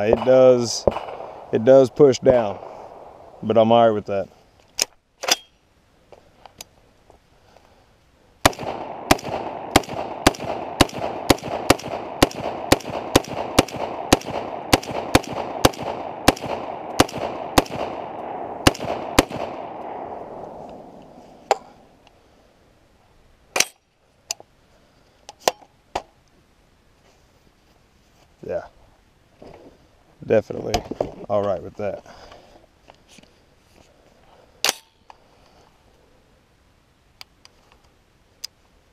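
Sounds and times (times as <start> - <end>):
rifle shots with echo: 0.0 - 3.4, 8.4 - 21.9.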